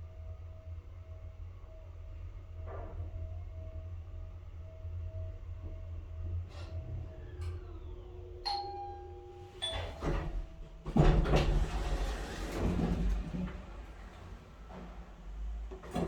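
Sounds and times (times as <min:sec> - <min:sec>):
elevator drive hum: 0:04.5 - 0:16.0
elevator doors rumbling open: 0:06.6 - 0:16.0
two-note falling chime: 0:08.5 - 0:10.2.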